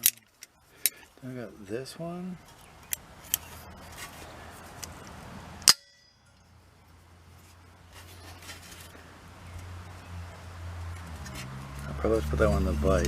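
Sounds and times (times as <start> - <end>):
metal parts clicking: 0.0 - 1.0
sharp ringing metallic clank: 5.6 - 6.5.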